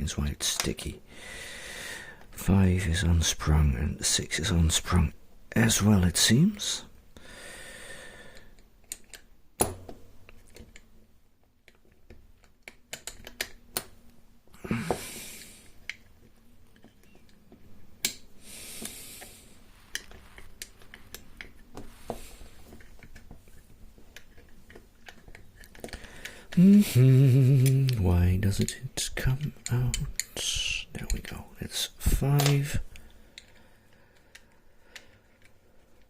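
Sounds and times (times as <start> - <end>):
clicks and taps of lock parts: 8.4 - 10.9, 11.6 - 14.2, 24.1 - 26.4
handling rustles: 18.7 - 26.1.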